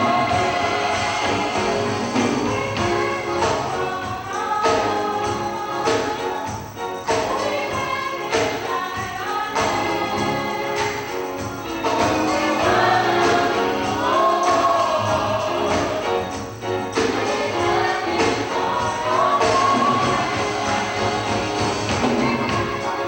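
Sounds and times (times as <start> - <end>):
choir singing gospel: 0.0 - 23.0
instrumental accompaniment: 0.0 - 23.0.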